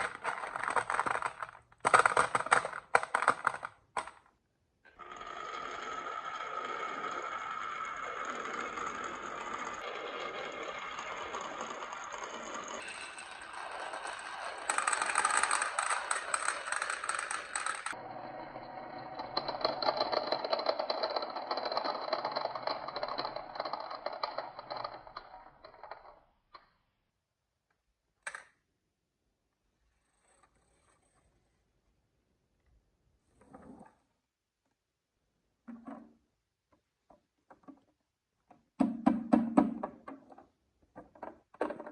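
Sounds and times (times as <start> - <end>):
marbles rattling down wooden tracks: 0.0 - 4.2, 5.0 - 26.2.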